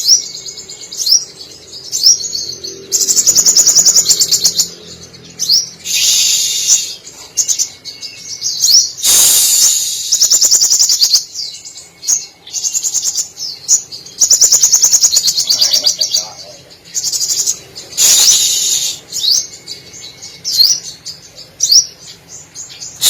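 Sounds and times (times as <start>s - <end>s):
bird singing high trills: 0.0s - 23.0s
harsh bird call burst: 2.0s - 4.7s, 5.4s - 11.4s, 14.2s - 19.6s.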